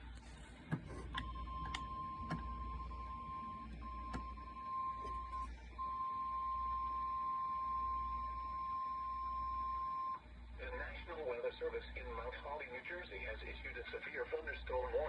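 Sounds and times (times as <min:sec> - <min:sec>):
steady alarm beep: 0:01.2 - 0:10.2.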